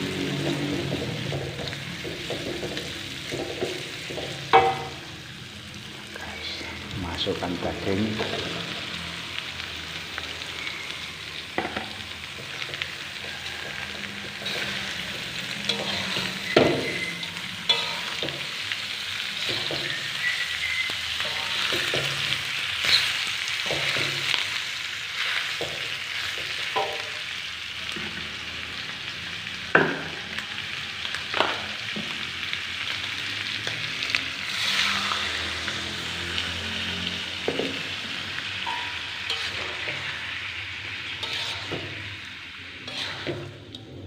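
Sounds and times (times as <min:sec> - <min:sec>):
meat sizzling in hot oil: 0:00.0 - 0:44.0
utensil scraping a pan: 0:14.3 - 0:18.6, 0:21.2 - 0:24.3, 0:38.7 - 0:40.4, 0:41.0 - 0:42.2, 0:42.8 - 0:43.6.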